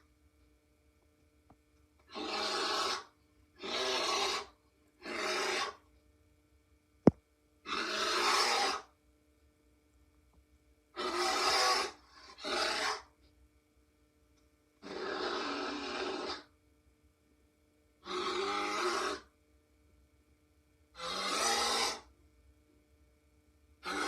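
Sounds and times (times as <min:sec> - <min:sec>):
creature rasping growls: 0:07.7 - 0:08.8, 0:14.8 - 0:16.4, 0:18.1 - 0:19.3, 0:21.0 - 0:22.0.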